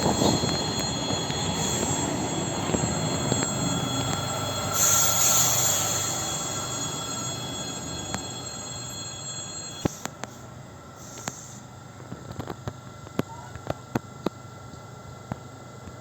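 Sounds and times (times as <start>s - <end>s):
steady high-pitched tones: 0.0s - 10.5s
electric train rumbling past: 0.0s - 10.6s.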